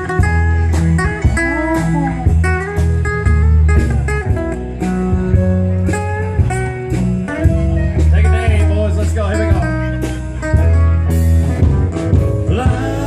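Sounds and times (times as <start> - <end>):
acoustic guitar solo: 0.0 - 13.0
bass: 0.0 - 13.0
drums: 0.0 - 13.0.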